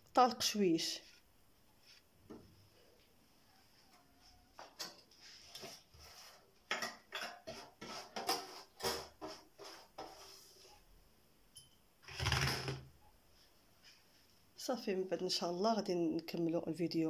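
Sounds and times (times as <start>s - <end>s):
dishes and utensils clinking: 6.6s - 9.4s
dishes clattering: 6.6s - 9.4s.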